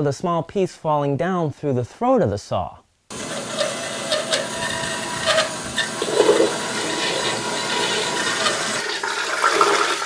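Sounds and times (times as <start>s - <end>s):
bandsaw running: 3.1s - 9.7s.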